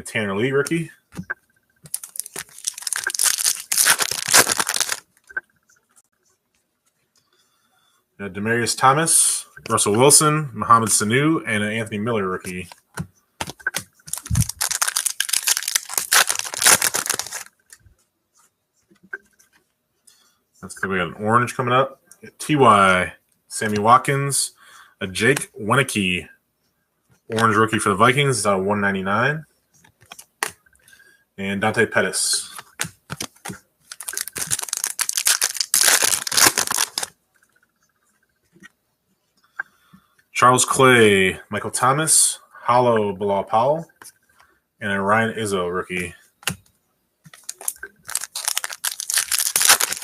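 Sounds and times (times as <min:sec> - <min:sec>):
foil wrapper tearing and crinkling: 0:01.9 - 0:05.1, 0:14.1 - 0:17.5, 0:32.8 - 0:37.1, 0:47.4 - 0:50.0.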